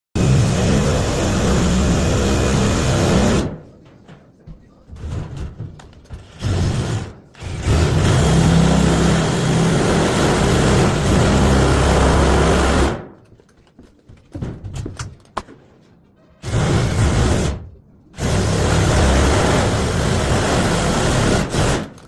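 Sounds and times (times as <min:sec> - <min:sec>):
drill cutting sheet metal: 0:00.2 - 0:03.6, 0:06.4 - 0:13.0, 0:16.4 - 0:17.6, 0:18.2 - 0:21.9.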